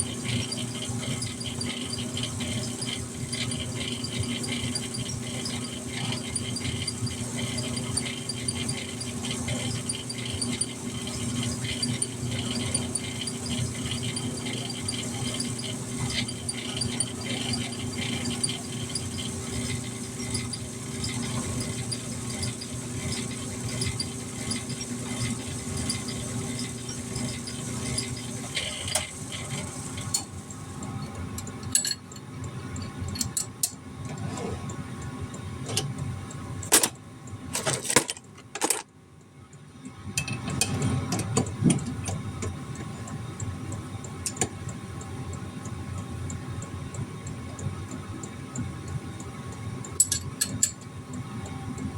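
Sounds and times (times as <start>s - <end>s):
light regular ticking: 41.2s - 51.9s.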